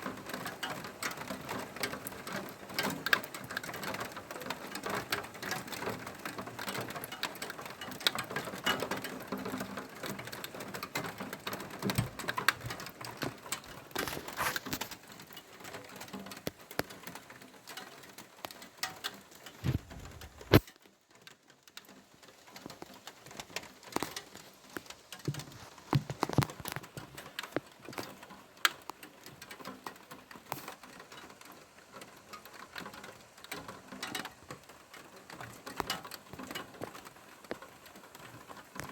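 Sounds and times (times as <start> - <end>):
rain pattering: 0.0 - 38.9.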